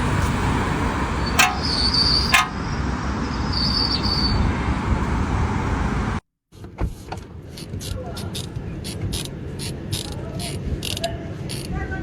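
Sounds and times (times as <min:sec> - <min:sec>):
car rumbling on the move: 0:00.0 - 0:06.2
sharp clicks: 0:01.4 - 0:02.6.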